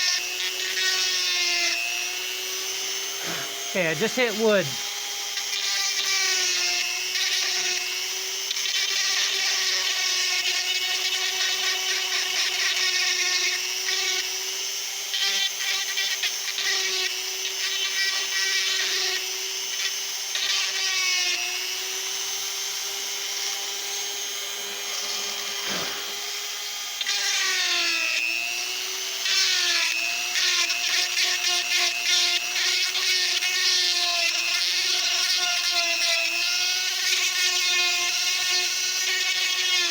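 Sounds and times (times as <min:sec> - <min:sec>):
die grinder whining: 0:00.0 - 0:39.9
rasping wood cutting: 0:00.1 - 0:04.3, 0:15.2 - 0:39.9.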